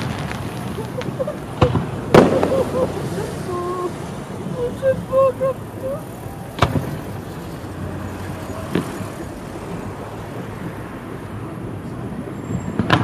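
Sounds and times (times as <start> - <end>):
firework bang: 0.0 - 3.5, 6.6 - 7.4, 12.6 - 13.0.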